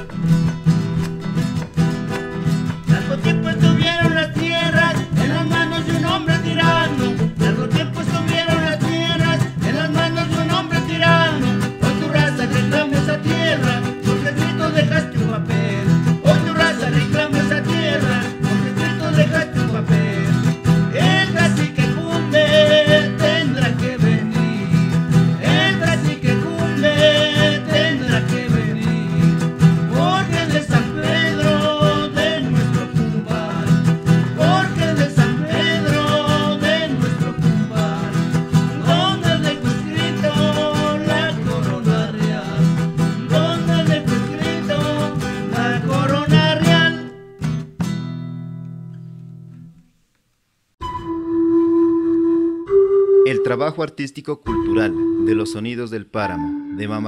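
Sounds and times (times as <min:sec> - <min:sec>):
folk band on plucked strings: 0:00.0 - 0:48.0.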